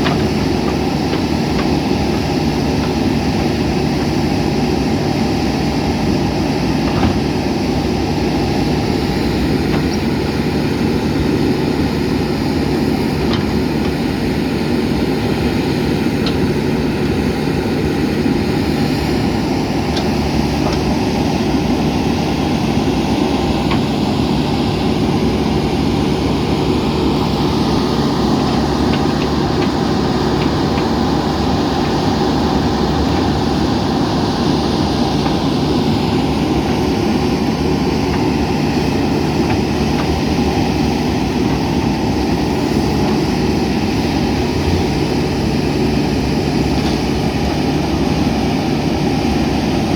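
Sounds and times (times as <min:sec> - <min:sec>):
diesel engine running: 0:00.0 - 0:49.9.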